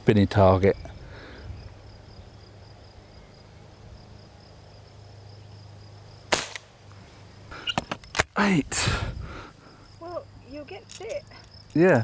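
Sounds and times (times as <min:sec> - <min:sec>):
air rifle shot crack: 0:06.3 - 0:06.8.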